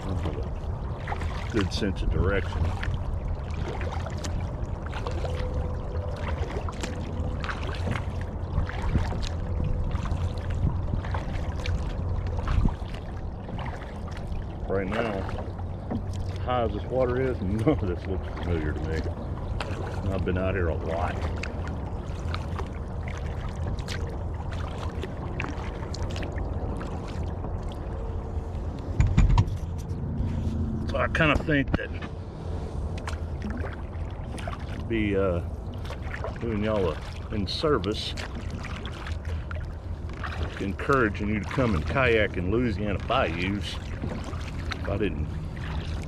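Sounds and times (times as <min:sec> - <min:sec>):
paddle dipping and water splashing: 0:00.0 - 0:46.0
steady low rumble: 0:00.0 - 0:46.0.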